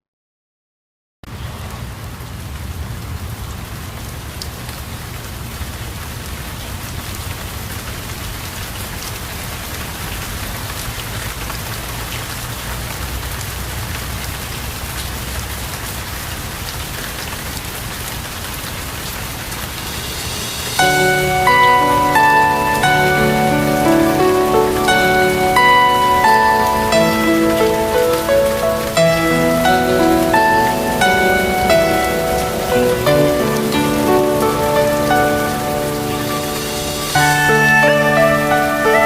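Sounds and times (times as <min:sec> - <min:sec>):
heavy rain: 0:01.3 - 0:39.0
low rumble: 0:19.2 - 0:21.6.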